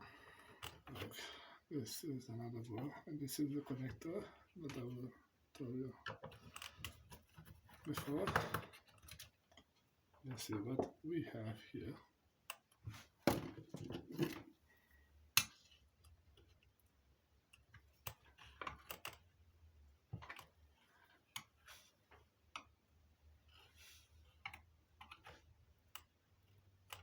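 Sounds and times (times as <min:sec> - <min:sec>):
clicks and taps of handled parts: 0:15.3 - 0:16.8, 0:24.4 - 0:27.0.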